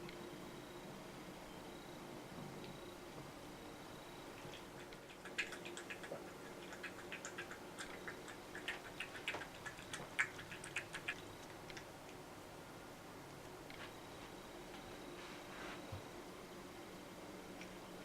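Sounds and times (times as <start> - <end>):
cat suckling wet clicks: 4.4 - 12.2.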